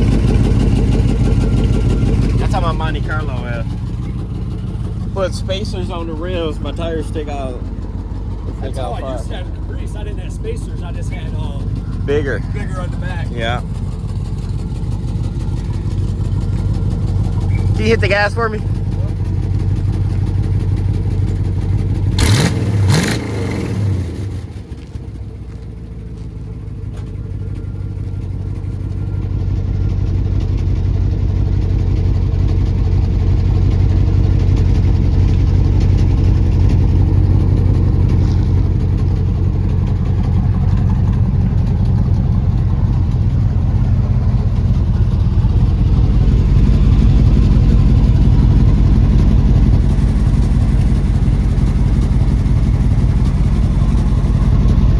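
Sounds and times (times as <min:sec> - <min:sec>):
engine revving and running: 0:00.0 - 0:04.5, 0:21.8 - 0:25.0.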